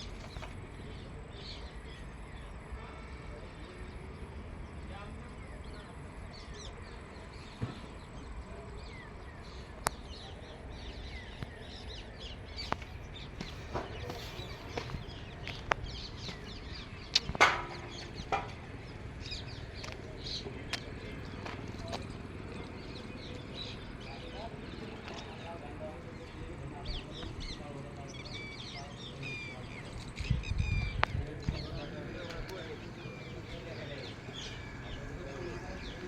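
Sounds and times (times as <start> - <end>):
sharp knocks and clicks: 17.1 - 18.7.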